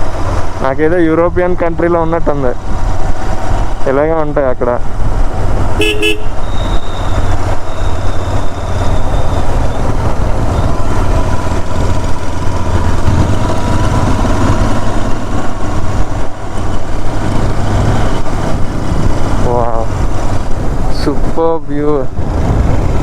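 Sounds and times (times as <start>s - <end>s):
motorcycle engine running: 4.8s - 23.0s
wind rush on microphone: 4.8s - 23.0s.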